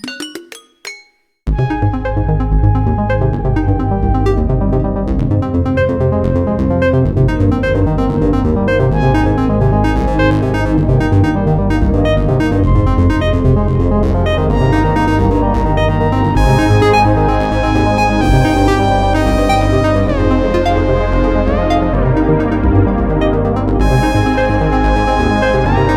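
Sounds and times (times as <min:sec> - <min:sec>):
electronic ringtone melody: 0:00.0 - 0:01.3.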